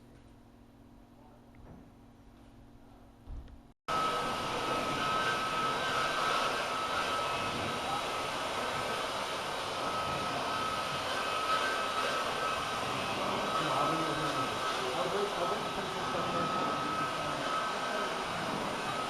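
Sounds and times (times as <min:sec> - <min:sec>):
high whine: 0:03.9 - 0:19.0
rushing machine noise: 0:03.9 - 0:19.0.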